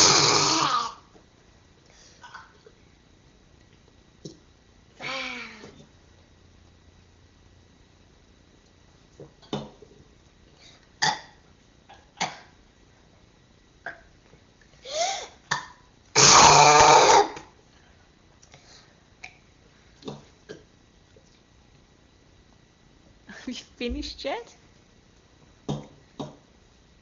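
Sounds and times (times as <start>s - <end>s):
child burping: 0.0s - 1.0s, 11.0s - 11.4s, 15.5s - 17.4s.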